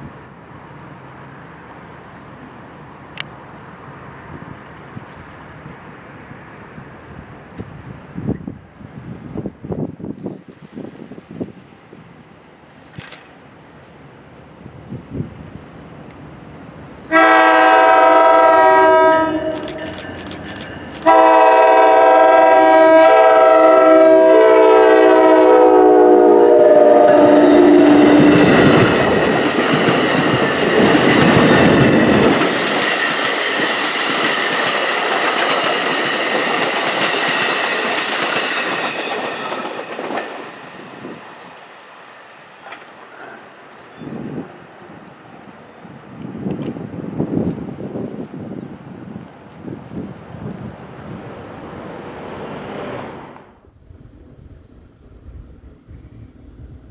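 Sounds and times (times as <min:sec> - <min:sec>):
train wheels on rails: 0:00.0 - 0:08.6, 0:12.9 - 0:56.9
train horn blasts: 0:17.1 - 0:20.2, 0:21.0 - 0:29.7.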